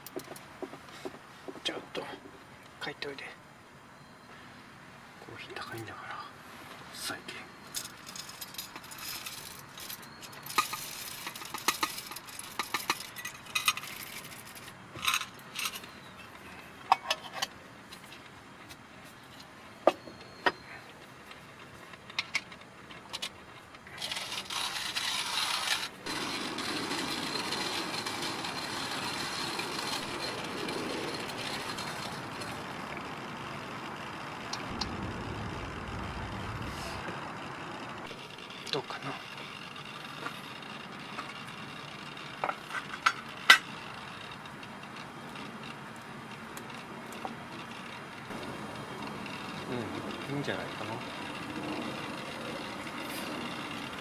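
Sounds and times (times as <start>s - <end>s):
utensils clinking and rattling: 7.7s - 17.5s
steady rushing noise: 34.4s - 38.1s.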